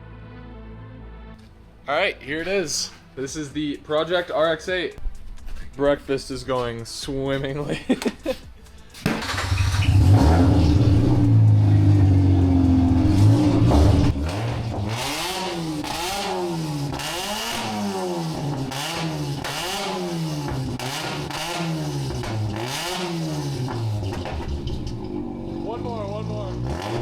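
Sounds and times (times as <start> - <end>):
rotary engine revving: 9.1 - 27.0.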